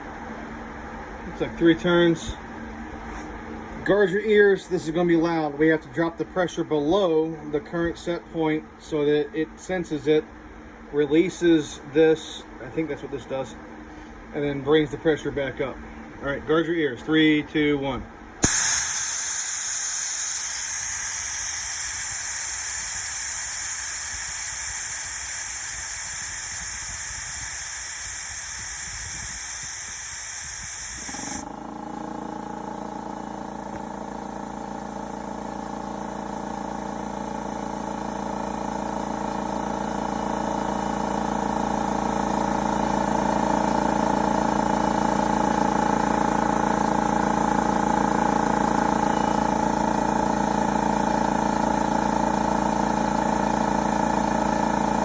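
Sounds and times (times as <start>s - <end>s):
compressed air hissing: 18.4s - 31.5s
air compressor motor running: 18.4s - 55.0s.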